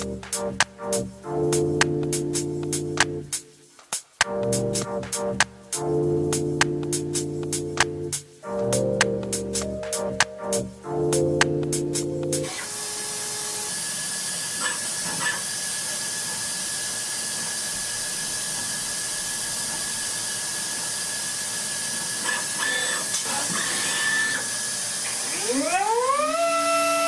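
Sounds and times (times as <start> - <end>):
steady hiss: 1.6 - 10.1.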